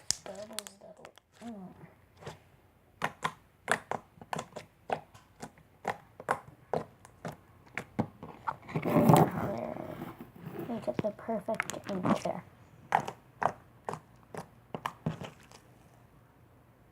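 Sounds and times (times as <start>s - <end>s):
squishy slime rush: 12.9s - 15.7s.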